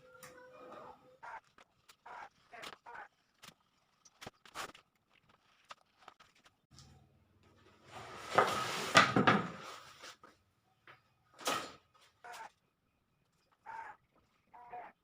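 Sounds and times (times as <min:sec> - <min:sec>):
scraping rustle: 0:07.6 - 0:10.4.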